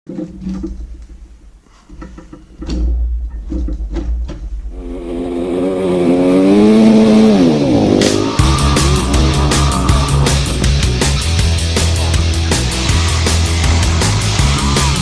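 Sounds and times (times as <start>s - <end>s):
dirt bike engine revving: 4.7s - 15.0s.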